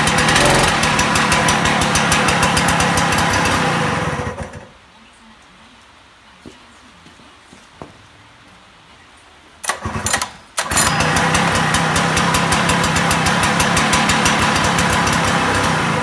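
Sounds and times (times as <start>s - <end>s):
two-stroke engine starting and running: 0.0s - 4.7s, 9.6s - 16.0s.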